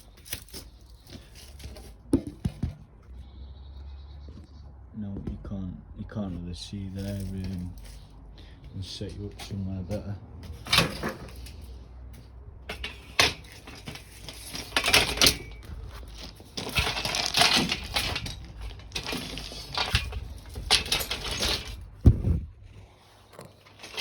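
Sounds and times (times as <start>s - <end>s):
camera handling knocks and rustling: 1.6s - 2.8s, 22.0s - 22.6s.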